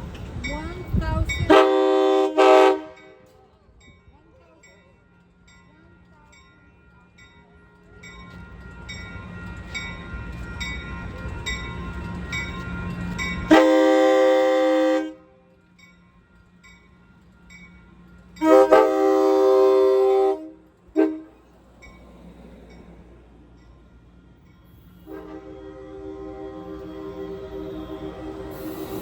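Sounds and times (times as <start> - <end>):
railroad crossing bell ringing: 0.0 - 29.0
train rumble: 0.0 - 29.0
locomotive horn blast: 1.5 - 3.2, 13.5 - 15.4, 18.4 - 21.4, 25.0 - 29.0.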